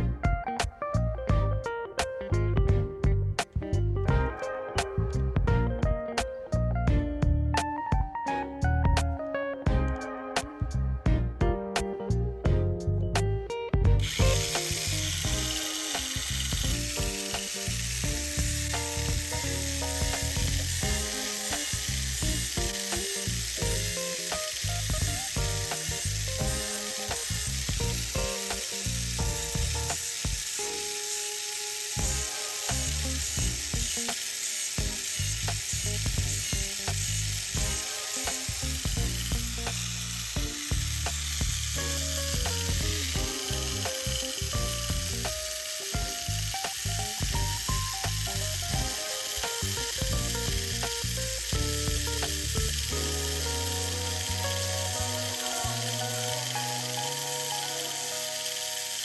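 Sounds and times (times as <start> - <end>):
background music: 0.0 - 59.0
toy car motor whirring: 14.0 - 59.0.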